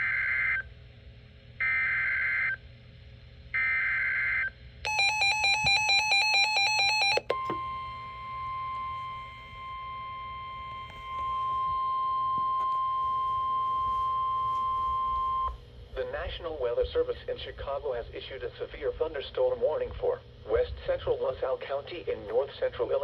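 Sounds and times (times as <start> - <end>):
steady attention tone: 4.9 - 15.6.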